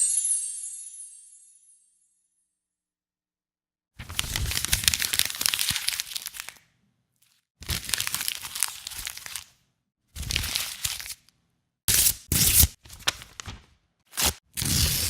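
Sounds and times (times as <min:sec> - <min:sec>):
paper or plastic crumpling: 0:04.0 - 0:09.6.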